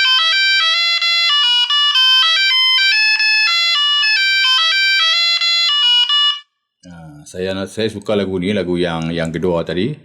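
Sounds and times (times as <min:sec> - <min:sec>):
mobile phone ringtone beeps: 0:00.0 - 0:06.5.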